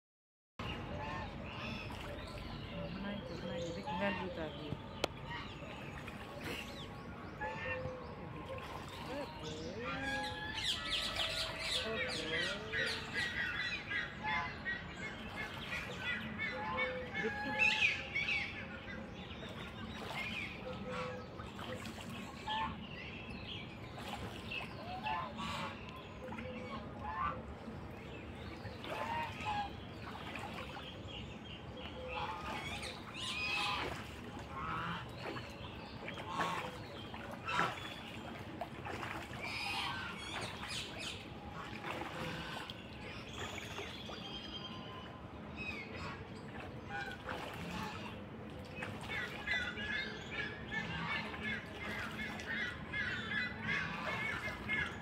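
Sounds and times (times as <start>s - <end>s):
water splashing: 0.6s - 18.3s, 19.2s - 55.0s
ducks calling: 2.9s - 18.6s, 24.8s - 27.7s, 28.8s - 30.7s, 31.9s - 38.3s, 38.9s - 43.5s, 49.0s - 55.0s
ducks chirping: 25.0s - 25.8s, 31.9s - 38.3s, 39.5s - 43.6s.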